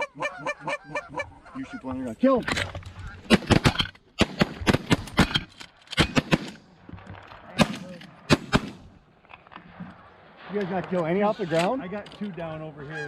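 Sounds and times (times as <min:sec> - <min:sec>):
shotguns firing: 0:03.2 - 0:06.7, 0:07.5 - 0:09.0.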